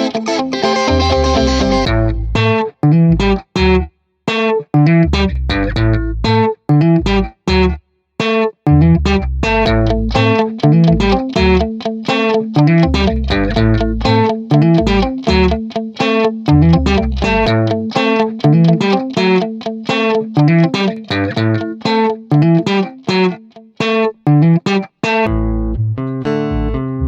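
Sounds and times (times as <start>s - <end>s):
plucked guitar notes: 0.0s - 27.0s
low bass line: 0.9s - 3.9s, 4.8s - 7.8s, 8.7s - 11.7s, 12.6s - 15.6s, 16.5s - 18.6s, 25.3s - 27.0s.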